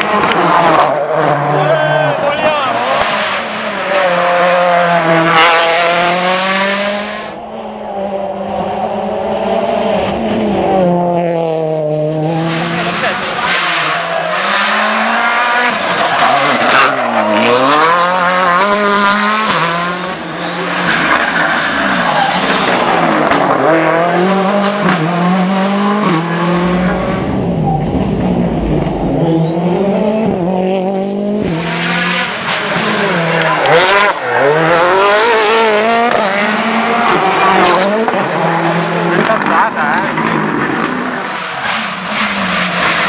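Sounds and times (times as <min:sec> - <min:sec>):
rally car engine revving: 0:00.0 - 0:43.0.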